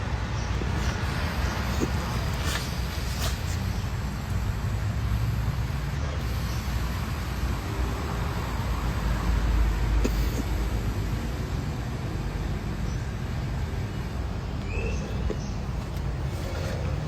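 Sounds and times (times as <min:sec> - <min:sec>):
vehicle engine rumble: 0:00.0 - 0:17.0
faint hiss: 0:02.4 - 0:11.6.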